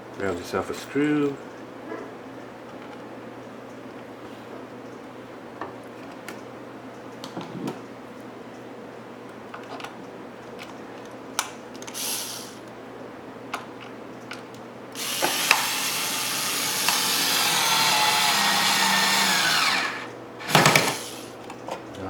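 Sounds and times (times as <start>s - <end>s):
parts clicking and tapping: 13.5s - 15.8s
cordless drill driving screw: 15.0s - 21.3s.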